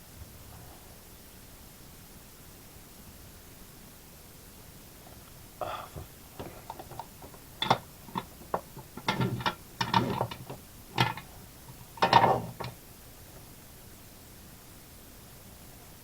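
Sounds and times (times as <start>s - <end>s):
hand tools clattering on workbench: 6.0s - 12.8s.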